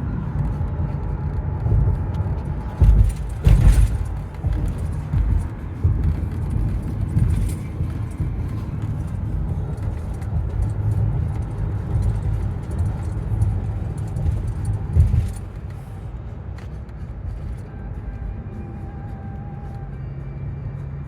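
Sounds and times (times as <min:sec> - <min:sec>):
motor vehicle rumble: 0:00.0 - 0:21.0
loud thump: 0:02.8 - 0:07.5.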